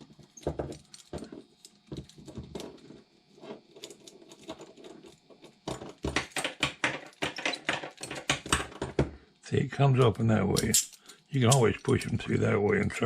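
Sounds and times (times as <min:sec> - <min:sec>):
handcuffs clicking and rattling: 0:10.6 - 0:12.2.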